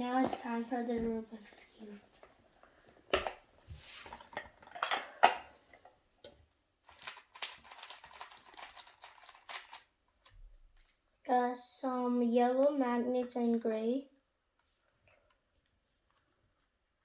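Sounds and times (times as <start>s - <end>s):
packaging rustling: 6.8s - 11.0s.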